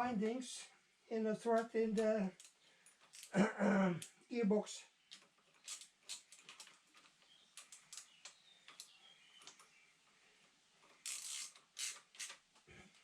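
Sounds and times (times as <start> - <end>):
faint clicks of hand tools: 1.5 - 3.4, 5.1 - 9.8.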